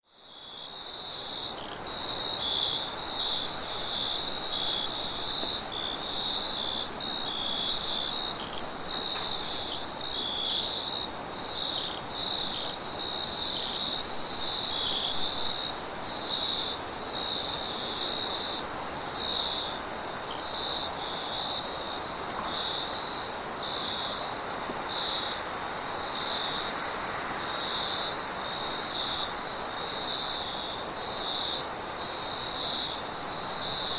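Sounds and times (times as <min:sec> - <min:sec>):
crickets chirping: 0:00.1 - 0:33.9.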